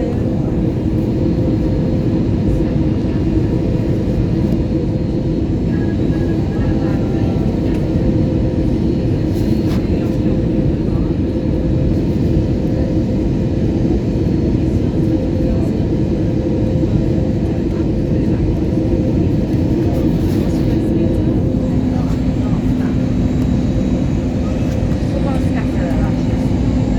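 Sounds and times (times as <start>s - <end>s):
airliner cabin engine rumble: 0.0s - 26.9s
steady cabin hum: 17.8s - 26.9s.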